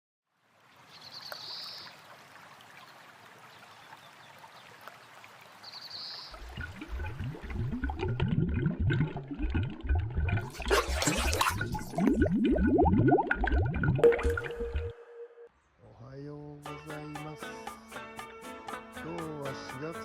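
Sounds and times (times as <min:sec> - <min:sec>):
river water flowing: 0:00.3 - 0:08.3
water gurgling and splashing: 0:06.3 - 0:15.0.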